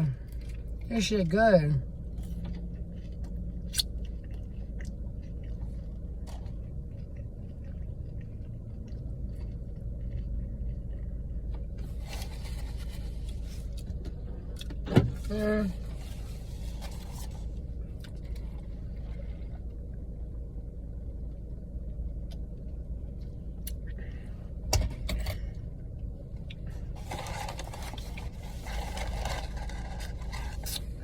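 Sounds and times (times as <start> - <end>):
car engine idling: 0.0 - 31.0
rustling: 27.0 - 31.0.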